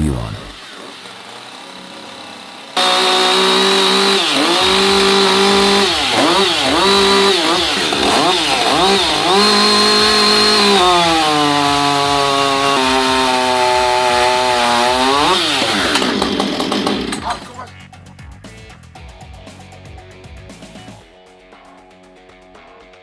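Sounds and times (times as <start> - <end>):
chainsaw running at high revs: 0.0 - 17.8.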